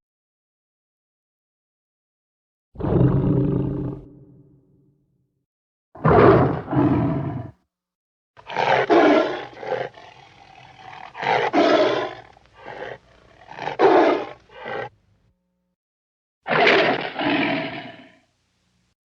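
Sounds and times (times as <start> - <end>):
dinosaur roars and growls: 2.8 - 4.6, 6.0 - 7.6, 8.4 - 14.9, 16.5 - 18.2.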